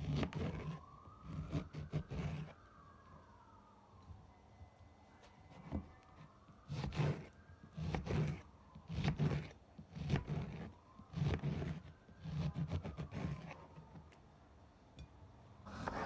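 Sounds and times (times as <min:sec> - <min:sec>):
scraping strokes: 0:15.7 - 0:16.0.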